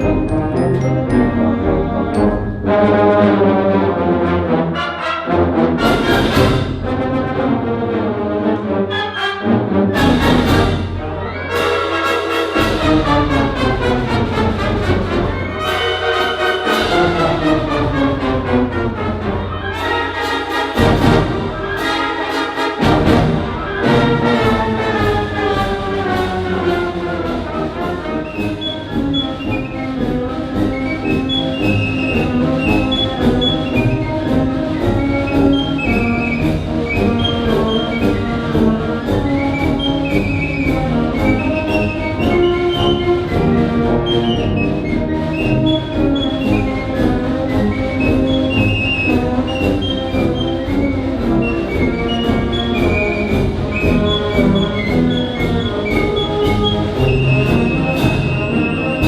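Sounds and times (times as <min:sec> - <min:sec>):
orchestral music with brass: 0:00.0 - 0:59.0.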